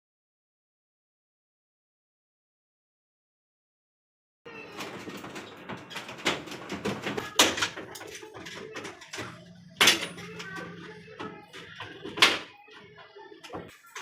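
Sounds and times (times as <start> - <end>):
knocks and clatter: 4.5 - 13.8.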